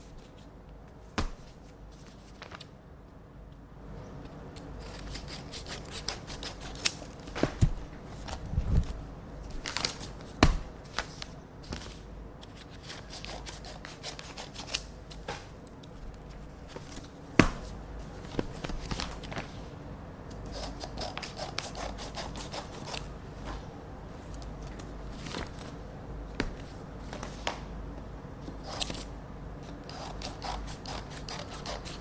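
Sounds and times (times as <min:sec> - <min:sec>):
paper rustling: 0:01.4 - 0:02.7, 0:04.8 - 0:19.7, 0:20.6 - 0:25.8, 0:26.4 - 0:27.6
scissors cutting paper: 0:04.8 - 0:07.1, 0:12.8 - 0:14.9, 0:20.4 - 0:23.1, 0:28.6 - 0:29.0, 0:29.8 - 0:32.0.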